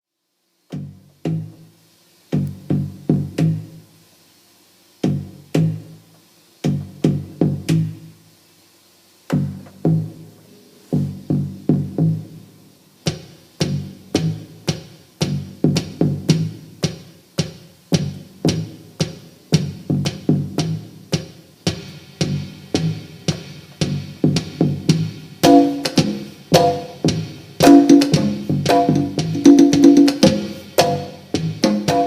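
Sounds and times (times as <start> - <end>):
looped plucked instrumental music: 13.1 - 17.1, 18.0 - 32.0.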